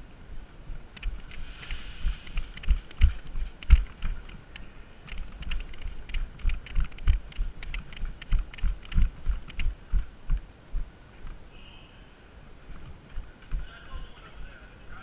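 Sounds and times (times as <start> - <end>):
gear clicking and rattling: 1.0 - 10.1
running footsteps thudding: 1.1 - 4.4.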